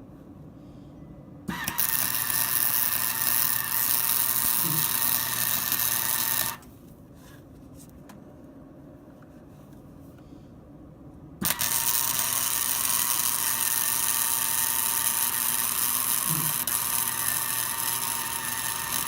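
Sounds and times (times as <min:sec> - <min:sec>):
welding arc hissing: 0:11.4 - 0:19.0.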